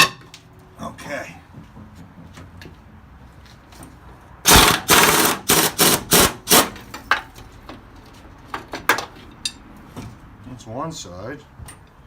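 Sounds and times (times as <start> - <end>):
pneumatic impact wrench rattling: 4.4 - 7.2.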